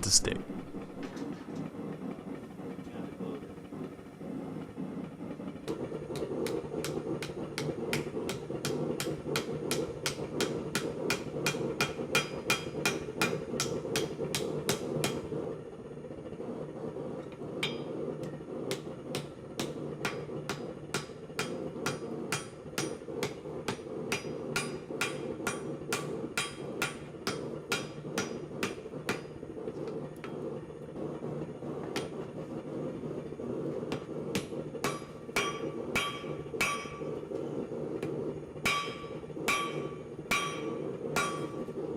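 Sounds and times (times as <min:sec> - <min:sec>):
hammer striking steel on anvil: 0:05.7 - 0:15.2, 0:17.6 - 0:18.0, 0:18.7 - 0:29.3, 0:33.9 - 0:37.2, 0:38.6 - 0:41.8.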